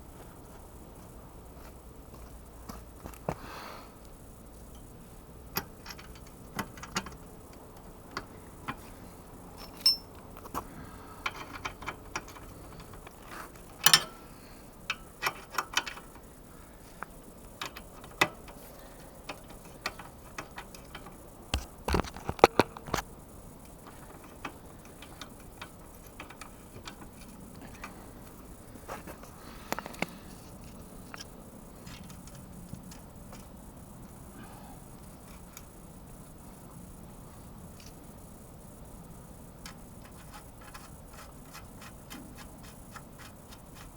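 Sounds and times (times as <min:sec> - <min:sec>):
metallic clicks and knocks of spanners: 0:09.5 - 0:10.6, 0:11.2 - 0:14.2.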